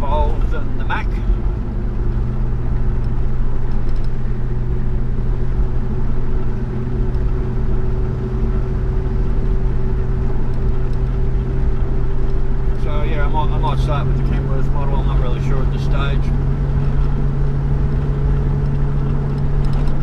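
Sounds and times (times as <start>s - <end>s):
car engine and road drone: 0.0s - 20.0s.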